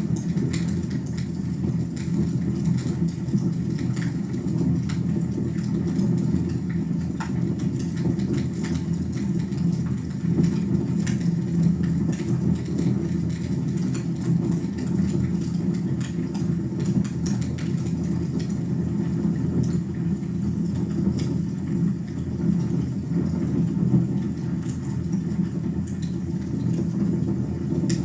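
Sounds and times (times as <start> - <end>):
fire rumbling in fireplace: 0.0 - 28.0.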